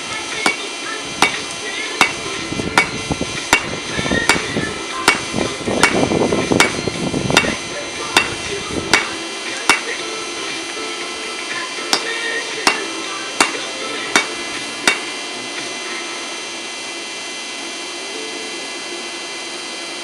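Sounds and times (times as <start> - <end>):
hammer striking metal on anvil: 0.4 - 10.0, 11.8 - 15.2.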